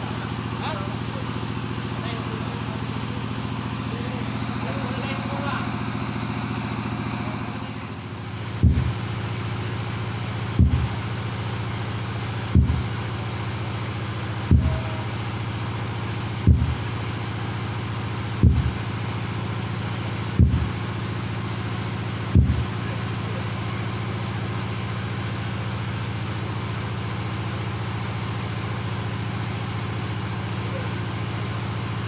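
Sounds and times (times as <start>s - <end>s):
steady low hum: 0.0s - 32.0s
heavy bass thump: 4.2s - 9.4s, 10.0s - 11.4s, 12.5s - 13.2s, 14.4s - 15.1s, 16.4s - 16.9s, 18.4s - 18.9s, 20.3s - 20.9s, 22.2s - 22.8s.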